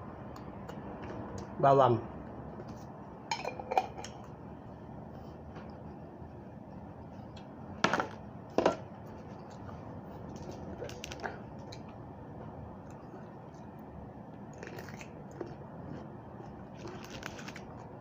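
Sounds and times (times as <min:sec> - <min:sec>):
crunching of raw vegetables: 0:14.4 - 0:18.0.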